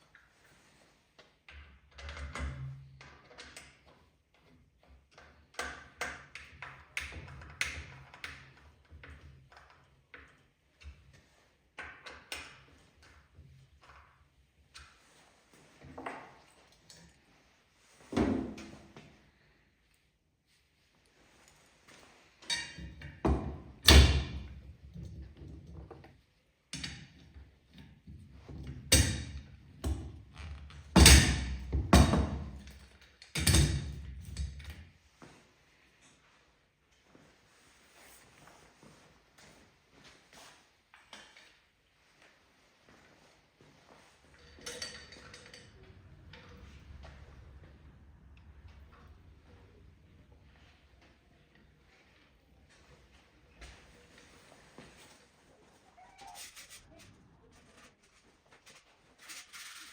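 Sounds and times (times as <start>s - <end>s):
faint low hum: 43.7s - 58.9s.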